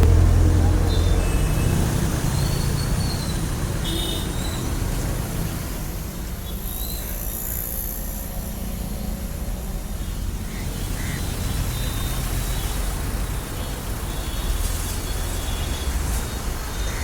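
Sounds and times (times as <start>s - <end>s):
car engine running: 0.0s - 2.2s.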